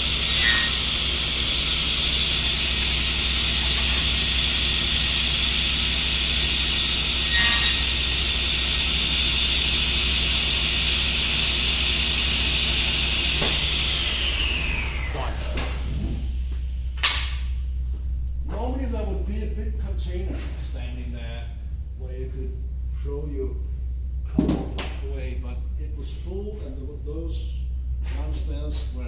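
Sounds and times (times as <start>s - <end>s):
saw cutting wooden board: 0.0s - 15.9s
table saw whine: 0.0s - 16.5s.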